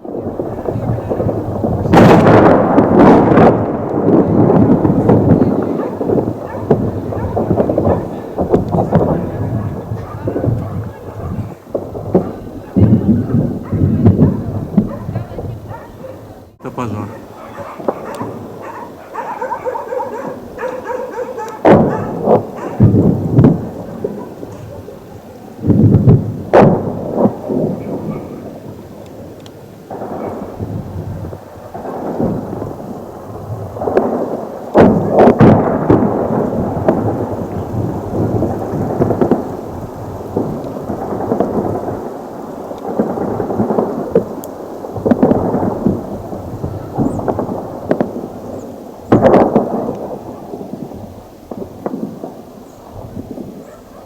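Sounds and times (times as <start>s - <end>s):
explosions: 0.0s - 15.8s, 21.6s - 29.3s, 29.9s - 53.6s
loud sharp blasts: 0.4s - 15.7s, 16.6s - 24.5s, 25.6s - 28.7s, 29.9s - 42.2s
gunfire: 0.6s - 25.0s, 25.6s - 28.5s, 31.7s - 33.0s, 33.8s - 39.4s, 49.1s - 50.9s, 51.5s - 52.4s.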